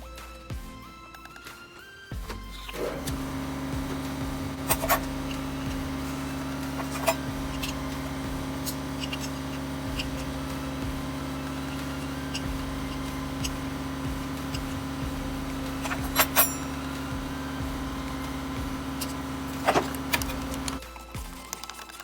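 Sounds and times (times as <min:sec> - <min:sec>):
steady mechanical hum: 0:02.2 - 0:20.8
sharp metallic clinks: 0:11.4 - 0:17.7.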